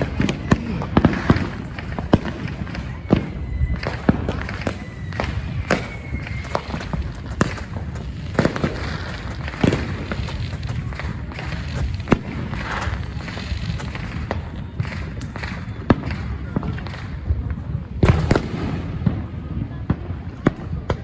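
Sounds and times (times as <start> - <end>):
fireworks bangs: 0.0 - 17.4
thin whistle: 2.7 - 10.2.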